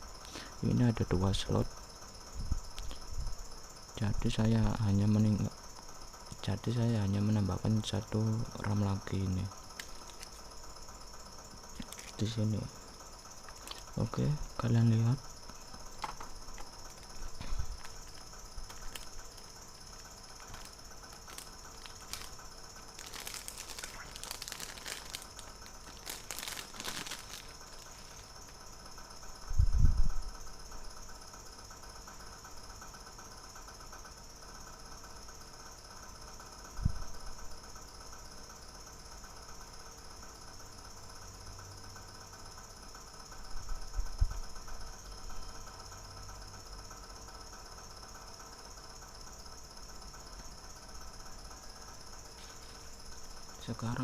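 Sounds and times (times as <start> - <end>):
faint hum and hiss: 0.0 - 54.0
plastic packaging crinkling: 9.8 - 10.5, 11.7 - 12.3, 13.5 - 14.0, 16.0 - 28.6.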